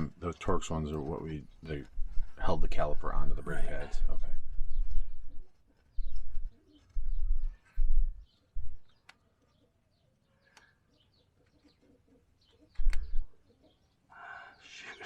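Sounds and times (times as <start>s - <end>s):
birds chirping faintly: 0.0s - 15.0s
sharp clicks: 12.7s - 13.2s.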